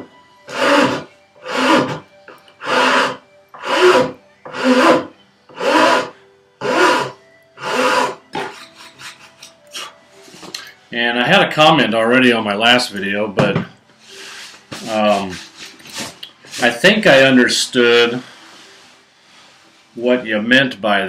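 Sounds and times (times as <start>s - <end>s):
file rasping on wood: 0.5s - 2.0s, 2.6s - 9.9s.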